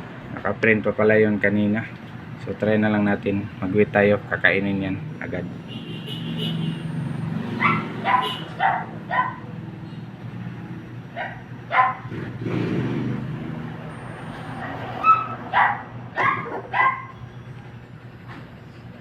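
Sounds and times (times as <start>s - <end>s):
dog barking: 7.6s - 9.5s, 11.2s - 12.1s, 14.6s - 17.2s.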